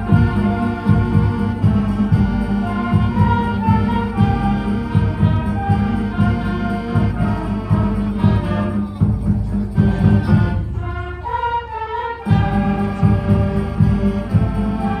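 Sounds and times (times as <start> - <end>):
music ensemble playing: 0.0 - 15.0.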